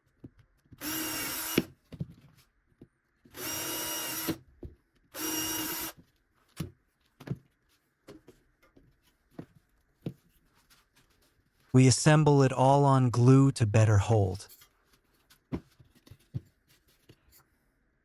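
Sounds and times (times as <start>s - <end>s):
power drill on wood: 0.8s - 1.7s, 3.3s - 4.4s, 5.1s - 6.0s.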